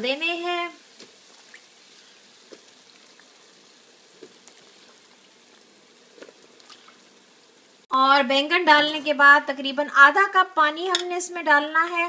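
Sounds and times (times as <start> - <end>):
food sizzling in oil: 0.0 - 7.9.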